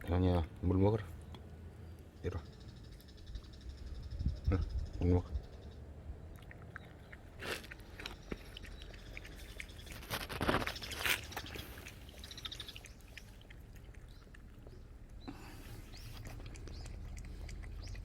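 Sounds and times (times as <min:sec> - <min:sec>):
dog licking and lapping: 0:06.3 - 0:15.2, 0:15.8 - 0:18.0.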